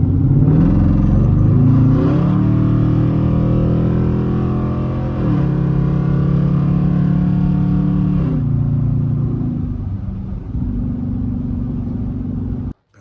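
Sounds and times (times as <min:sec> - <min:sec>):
car engine and exhaust: 0:00.0 - 0:13.0.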